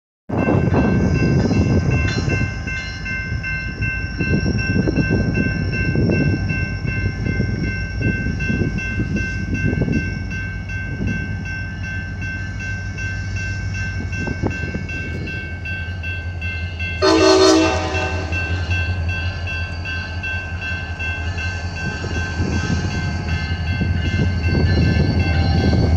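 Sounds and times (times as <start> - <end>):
diesel locomotive rumbling: 0.3 - 25.9
air horn blast: 17.0 - 18.6.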